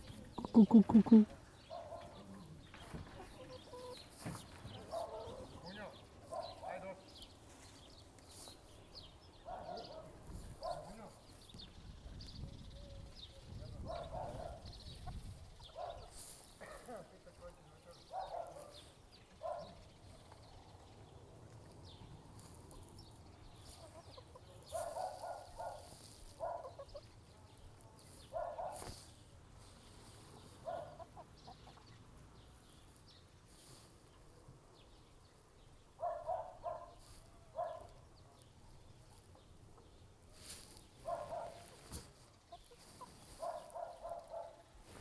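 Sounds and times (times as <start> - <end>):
chickens clucking: 0.0 - 6.7, 13.4 - 16.5, 21.4 - 32.4, 38.6 - 45.0.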